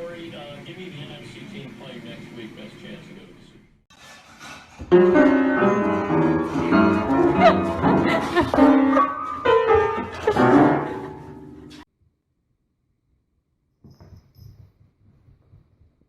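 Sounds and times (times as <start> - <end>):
piano and bowed strings music: 4.9 - 11.8.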